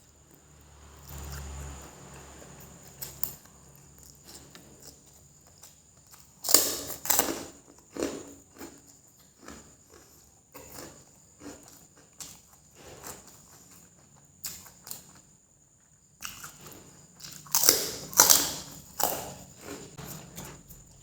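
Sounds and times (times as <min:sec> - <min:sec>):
person chewing noodles: 0:04.0 - 0:15.2, 0:16.2 - 0:20.2.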